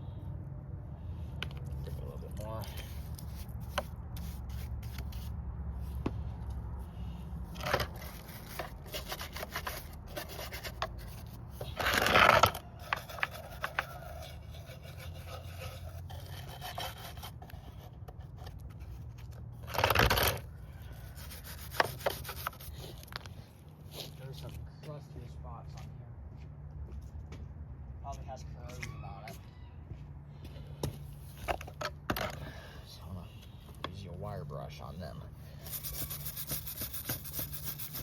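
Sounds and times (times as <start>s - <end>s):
stiff brush scrubbing: 1.6s - 6.0s, 7.5s - 20.3s, 20.9s - 24.4s, 35.4s - 38.0s.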